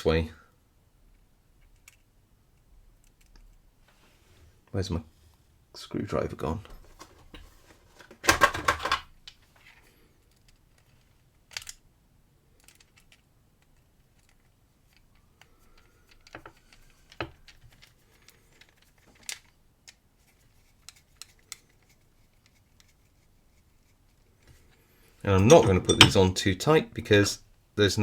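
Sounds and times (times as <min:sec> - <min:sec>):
metal parts clattering: 0:08.0 - 0:09.0, 0:25.3 - 0:26.4
metal clicks and clinks: 0:25.4 - 0:26.3.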